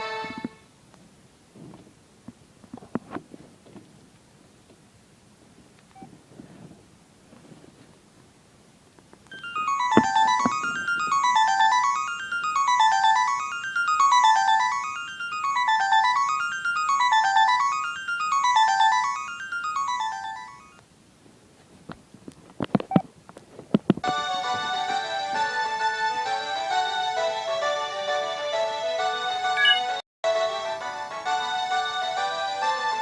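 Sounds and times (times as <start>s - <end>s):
electronic phone ringtone beeps: 9.3s - 20.8s, 29.4s - 30.0s.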